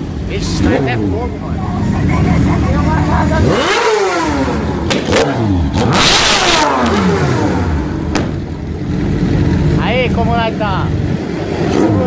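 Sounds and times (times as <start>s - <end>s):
motorcycle engine revving: 0.0s - 12.0s
exhaust cracks: 3.0s - 10.3s.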